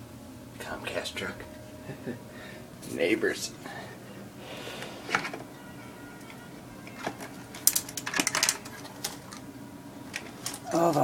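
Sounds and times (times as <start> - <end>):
mechanical clicks and rattles: 6.9 - 9.4.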